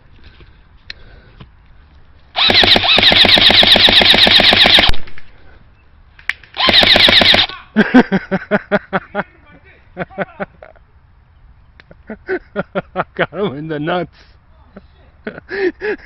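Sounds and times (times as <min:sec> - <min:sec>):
airsoft gun automatic fire: 0:02.4 - 0:05.1, 0:06.6 - 0:07.5.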